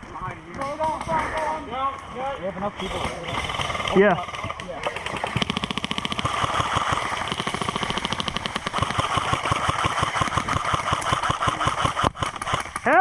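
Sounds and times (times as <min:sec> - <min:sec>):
airsoft guns firing rapidly: 0:00.6 - 0:01.7, 0:02.8 - 0:13.0.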